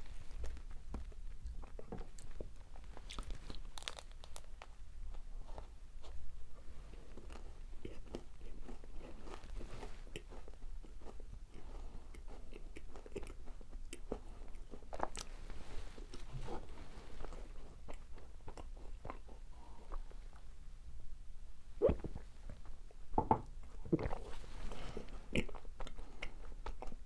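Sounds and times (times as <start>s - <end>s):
crunchy chewing: 0.3s - 6.2s, 6.9s - 15.4s.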